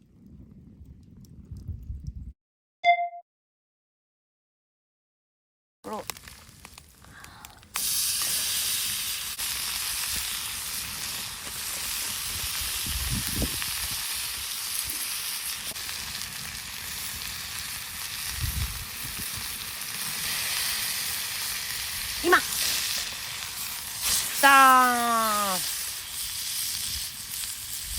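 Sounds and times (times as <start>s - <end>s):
food sizzling: 5.9s - 27.9s.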